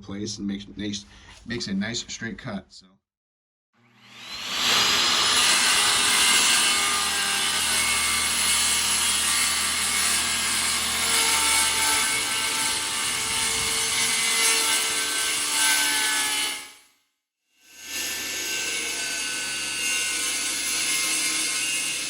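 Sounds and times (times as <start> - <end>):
power tool grinding fiberglass: 3.8 - 16.7, 17.7 - 22.0.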